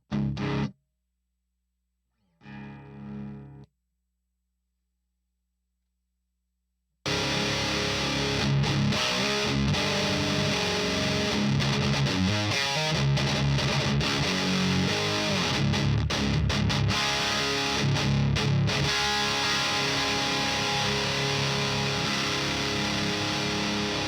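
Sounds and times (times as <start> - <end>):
distorted electric guitar riffing: 0.0 - 0.7, 2.4 - 3.6, 7.1 - 24.0.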